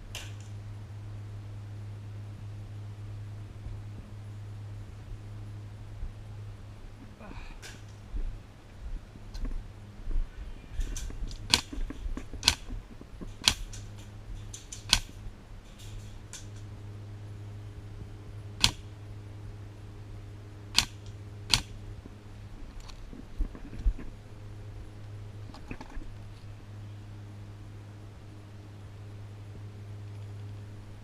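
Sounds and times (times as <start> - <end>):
steady low hum: 0.0 - 31.0
airsoft gun shots: 11.5 - 12.7, 13.4 - 13.8, 14.7 - 15.2, 18.6 - 18.9, 20.8 - 21.8.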